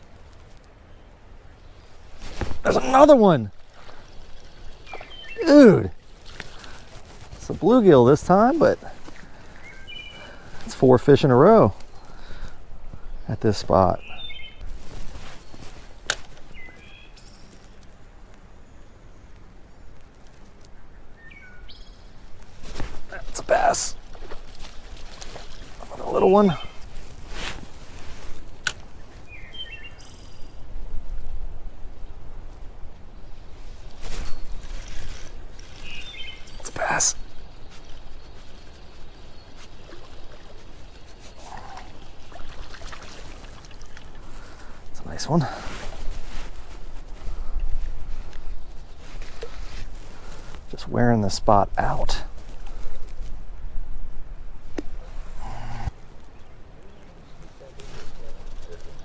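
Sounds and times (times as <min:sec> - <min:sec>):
low outdoor background: 0:00.0 - 0:59.0
creek water trickling: 0:01.6 - 0:18.3, 0:21.2 - 0:53.5, 0:54.8 - 0:59.0
short bird chirps: 0:34.0 - 0:42.6.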